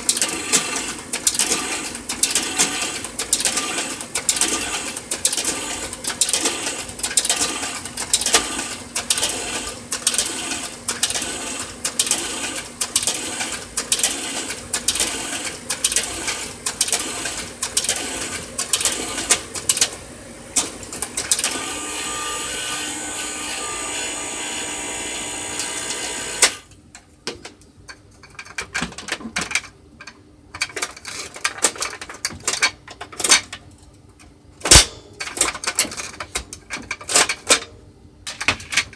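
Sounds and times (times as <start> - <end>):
slide projector clicking and rattling: 0.0 - 20.0, 20.6 - 21.6, 28.2 - 33.7, 34.6 - 37.6
steady projector buzz: 0.0 - 26.7.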